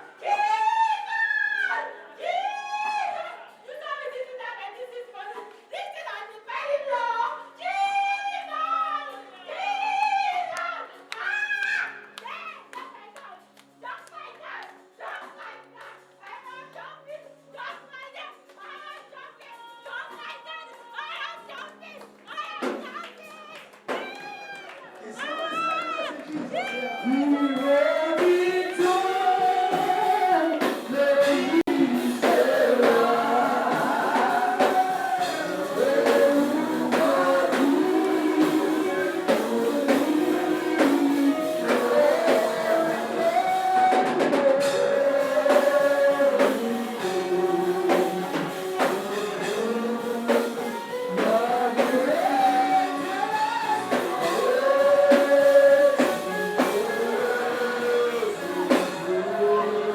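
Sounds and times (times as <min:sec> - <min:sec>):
voices singing worship song: 0:00.0 - 0:59.9
music with steady beat: 0:25.5 - 0:59.9.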